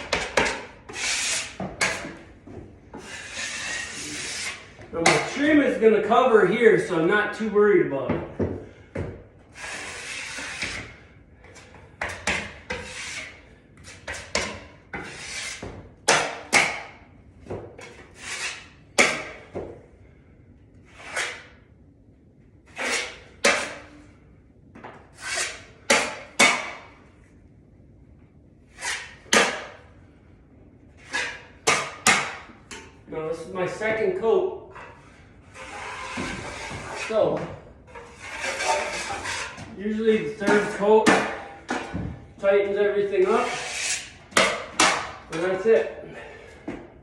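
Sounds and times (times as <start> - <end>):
drywall knife scraping compound: 0.0 - 2.3, 2.9 - 5.8, 9.5 - 17.0, 17.8 - 19.5, 20.8 - 21.7, 22.6 - 24.1, 25.1 - 26.9, 28.7 - 29.9, 31.0 - 32.5, 34.7 - 42.0, 42.6 - 46.7.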